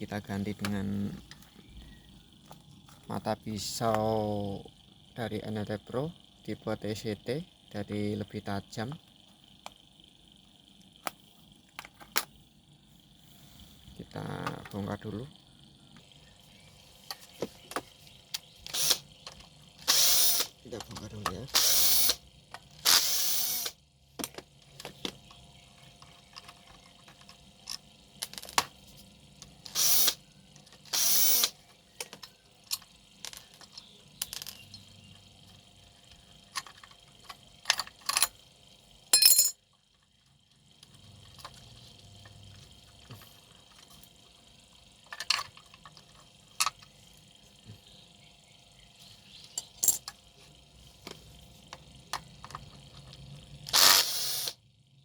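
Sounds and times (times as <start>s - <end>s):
power driver undoing screws: 18.6s - 22.2s, 22.8s - 23.8s, 29.7s - 30.2s, 30.8s - 31.6s, 53.7s - 54.6s
metal tools clicking and knocking: 32.0s - 34.9s, 36.5s - 38.4s, 39.2s - 39.6s, 45.0s - 46.9s, 49.5s - 50.2s.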